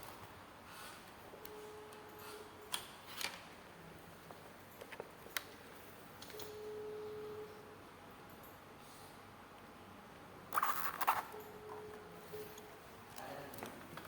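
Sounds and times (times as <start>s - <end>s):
faint steady tone: 6.3s - 7.8s.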